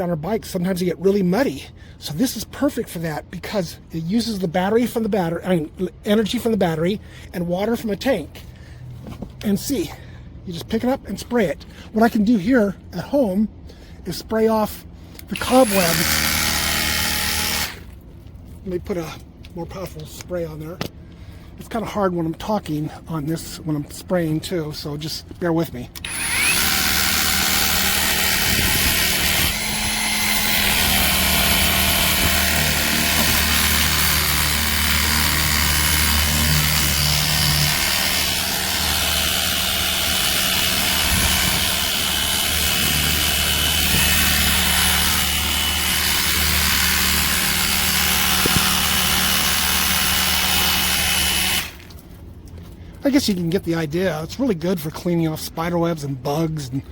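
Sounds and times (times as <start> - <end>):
electric pump hum: 15.2 - 18.6, 26.0 - 52.2.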